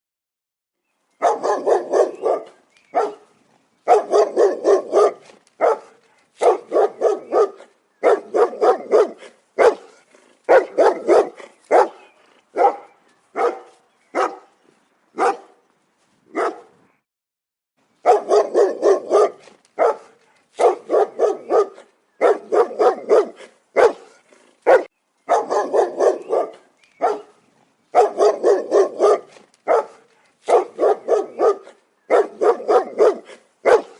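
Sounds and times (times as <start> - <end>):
large dog barking aggressively: 1.2 - 14.6, 15.2 - 15.6, 16.3 - 16.8, 18.0 - 33.9.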